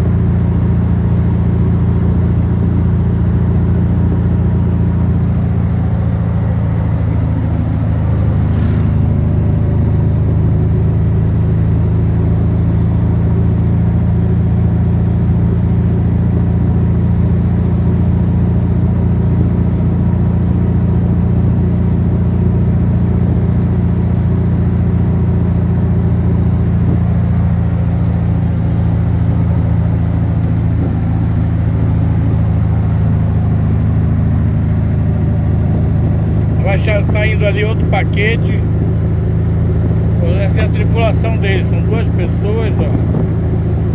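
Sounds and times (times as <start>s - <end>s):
vehicle engine and road noise: 0.0s - 43.9s.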